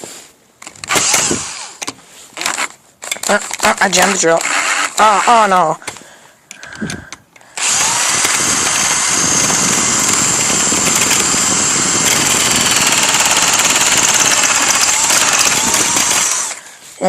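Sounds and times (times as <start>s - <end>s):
electric drill whining: 0.8s - 1.8s, 4.4s - 5.3s, 6.6s - 16.6s.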